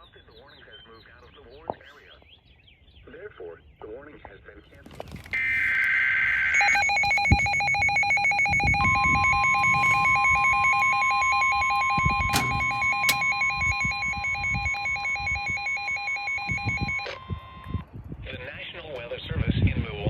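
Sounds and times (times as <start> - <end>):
piercing steady alarm tone: 5.4 - 17.8
sharp clicks: 6.6 - 16.0
fast-warbling electronic alert beep: 6.6 - 17.2.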